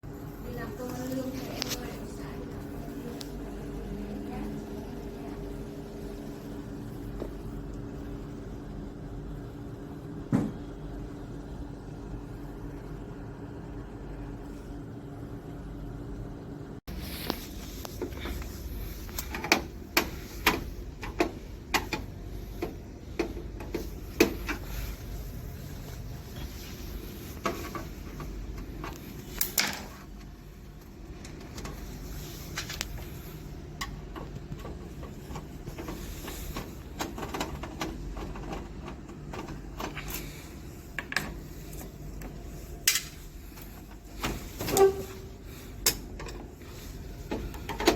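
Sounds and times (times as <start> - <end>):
steady low hum: 0.0 - 47.9
parts and tools clicking: 41.0 - 43.7.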